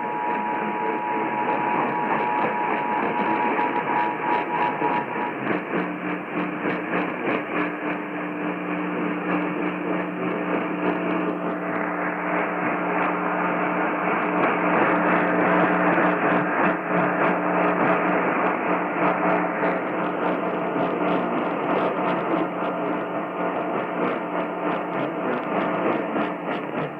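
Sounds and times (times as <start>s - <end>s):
radio static hiss and hum: 0.0s - 26.9s
static clicks: 0.2s - 26.9s.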